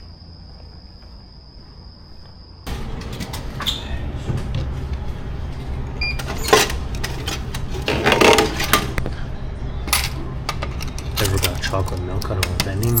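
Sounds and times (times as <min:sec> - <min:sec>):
steady low hum: 0:00.0 - 0:13.0
coins clinking in vending machine: 0:09.9 - 0:13.0.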